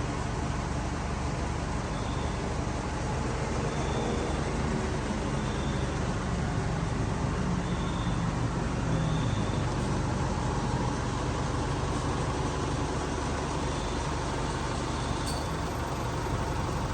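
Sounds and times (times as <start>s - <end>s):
vehicle engine running: 8.4s - 16.9s.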